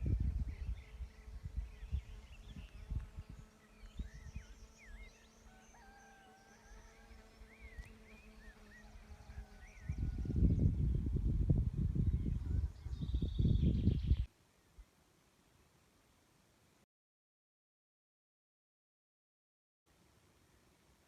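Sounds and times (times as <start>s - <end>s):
songbirds singing and calling: 0.0s - 14.8s.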